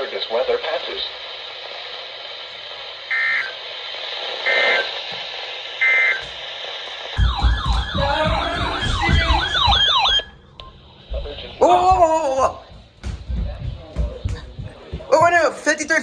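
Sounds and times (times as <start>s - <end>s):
radio hiss: 0.0s - 7.2s
loud siren sweeping: 7.2s - 11.6s.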